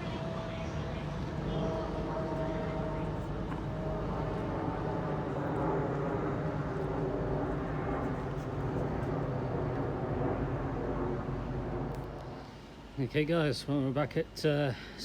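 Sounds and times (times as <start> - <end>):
electric train humming: 0.0 - 7.5.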